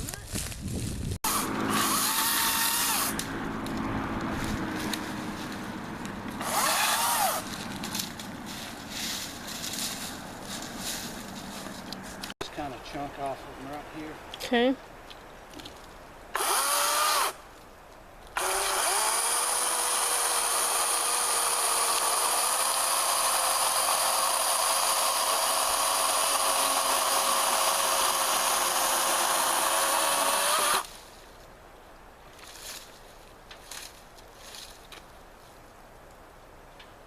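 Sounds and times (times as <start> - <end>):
chainsaw cutting log: 1.2 - 8.6, 16.4 - 17.4, 18.4 - 30.9.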